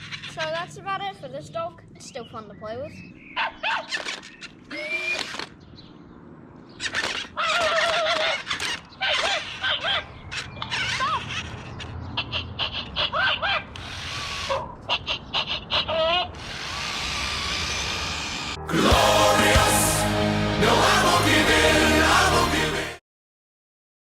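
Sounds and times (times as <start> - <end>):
toy dog electronic yips and barks: 3.4 - 5.4, 6.8 - 16.8.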